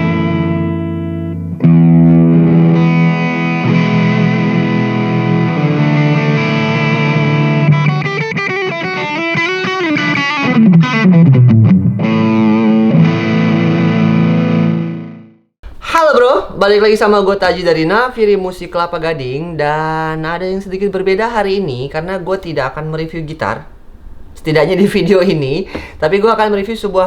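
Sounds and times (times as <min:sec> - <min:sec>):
overdriven electric guitar: 0:00.0 - 0:15.5.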